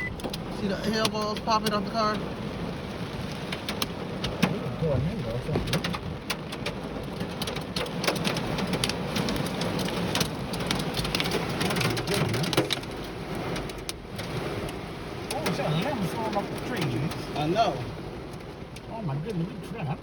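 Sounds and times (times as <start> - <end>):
rain hissing: 0.0 - 20.0
hail striking a car: 0.1 - 20.0.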